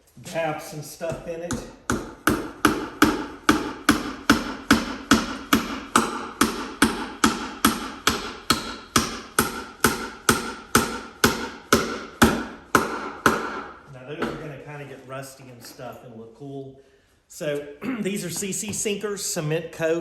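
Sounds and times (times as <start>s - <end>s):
hammer driving nails into wood: 1.1s - 14.4s.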